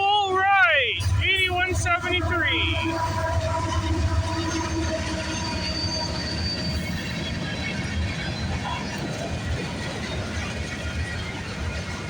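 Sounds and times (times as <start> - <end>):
freight train wheels rumbling on rail: 0.0 - 12.0
high wheel squeal: 1.1 - 8.9.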